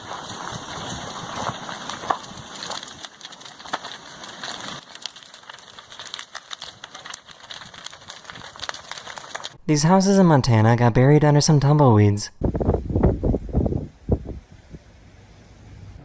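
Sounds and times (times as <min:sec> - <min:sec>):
sharp cracks: 0:00.0 - 0:09.6
lava crackling and popping: 0:00.0 - 0:09.7, 0:12.4 - 0:14.9.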